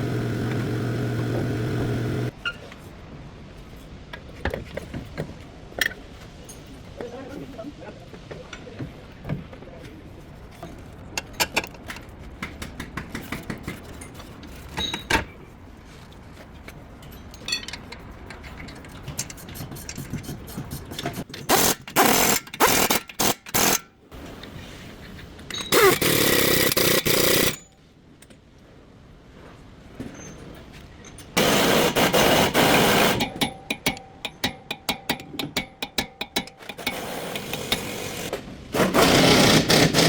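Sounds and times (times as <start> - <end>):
power tool bursts: 0.0 - 2.3, 21.5 - 23.8, 25.7 - 27.6, 31.4 - 33.2, 36.8 - 40.0
tool clicks and knocks: 33.1 - 38.0.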